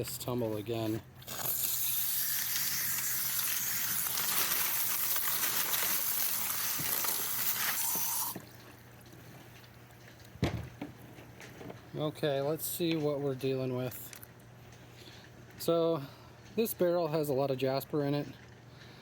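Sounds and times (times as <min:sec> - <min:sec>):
hose water spraying onto rocks: 0:00.8 - 0:08.4.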